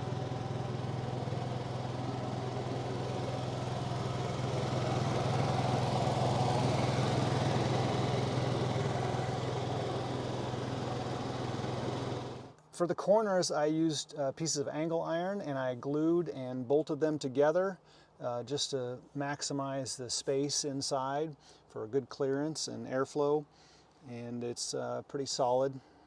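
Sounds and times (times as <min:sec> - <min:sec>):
generator humming muffled: 0:00.0 - 0:12.6.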